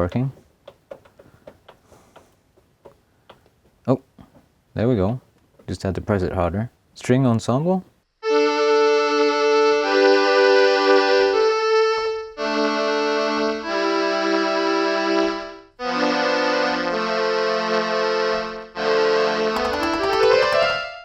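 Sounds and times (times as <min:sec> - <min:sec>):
keyboard string chords: 0:19.6 - 0:21.0.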